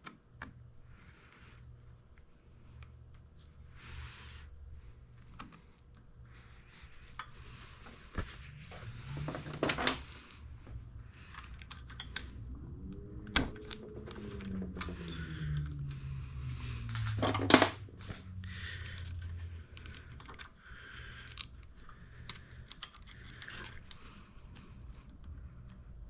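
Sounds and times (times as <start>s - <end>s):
metal parts clicking and tapping: 18.9s - 20.5s, 21.2s - 24.0s.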